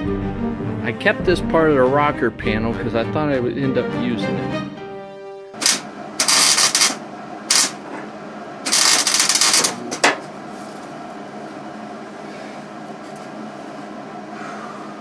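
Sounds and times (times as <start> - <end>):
arc welding crackling: 5.6 - 7.9, 8.6 - 10.2.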